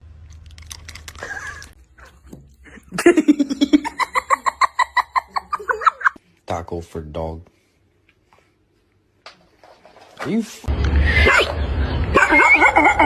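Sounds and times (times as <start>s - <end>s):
person laughing hard: 2.6s - 6.2s, 12.1s - 13.0s.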